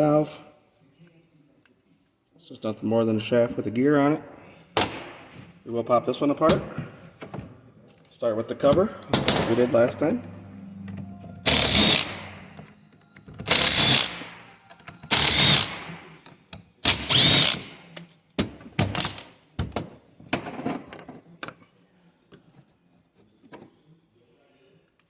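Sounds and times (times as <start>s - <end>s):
power screwdriver running: 11.5s - 12.3s, 13.5s - 14.4s, 15.1s - 15.8s, 16.9s - 17.8s.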